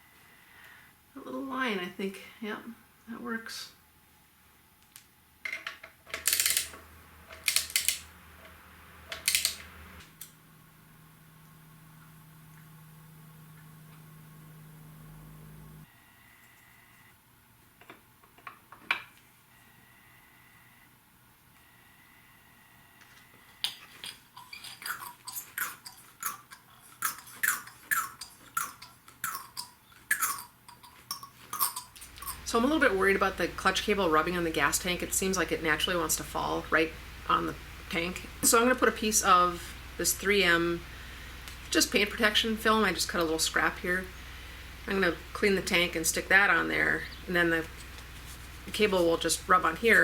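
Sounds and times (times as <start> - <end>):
faint low hum: 0.0 - 18.4.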